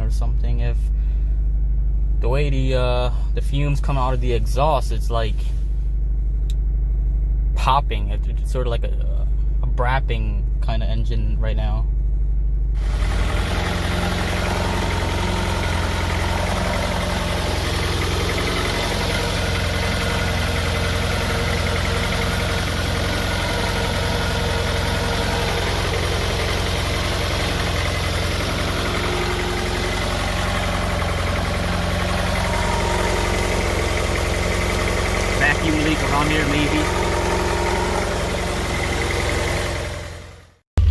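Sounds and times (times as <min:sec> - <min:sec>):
car engine idling roughly: 0:12.0 - 0:40.9.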